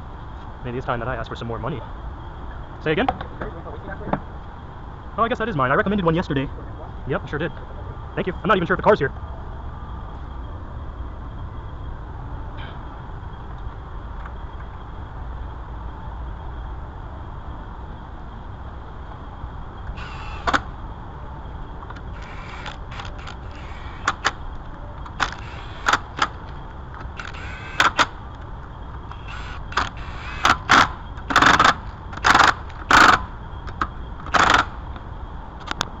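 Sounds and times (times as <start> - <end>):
rasping bursts: 19.9 - 20.7, 22.0 - 24.4, 25.2 - 28.1, 29.1 - 33.3.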